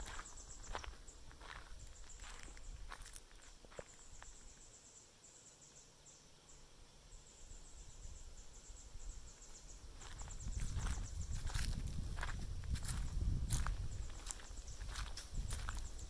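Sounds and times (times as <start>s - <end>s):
insects chirping: 0.0s - 16.0s.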